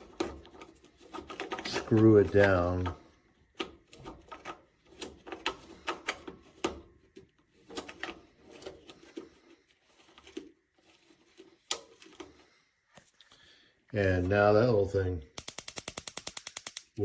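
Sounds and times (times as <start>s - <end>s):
plastic cap clicking and scraping: 0.0s - 13.3s
sharp plastic click: 15.3s - 17.0s.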